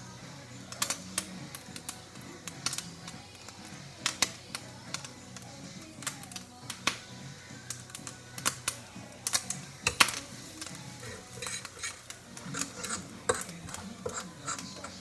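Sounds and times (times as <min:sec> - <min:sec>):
cutlery clinking against dishes: 0:08.0 - 0:15.0.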